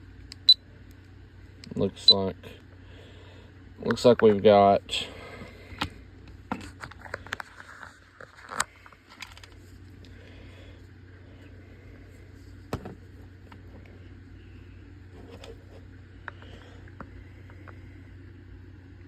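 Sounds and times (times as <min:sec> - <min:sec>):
low steady hum: 0:00.0 - 0:19.0.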